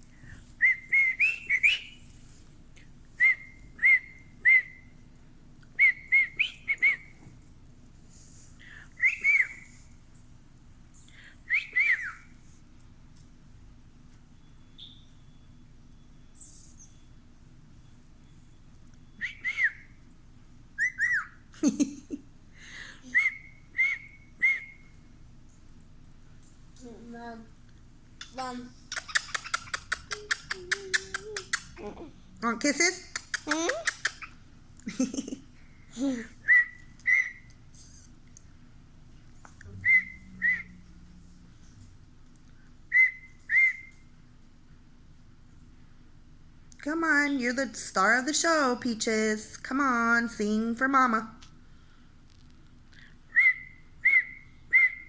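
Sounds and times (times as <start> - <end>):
cockatiel whistling: 0.6 - 2.0, 3.2 - 4.9, 9.0 - 9.7, 11.5 - 12.3, 14.4 - 17.2, 19.1 - 19.9, 20.8 - 21.4, 23.1 - 24.9, 36.4 - 37.5, 39.8 - 40.8, 42.9 - 44.0, 53.3 - 55.0.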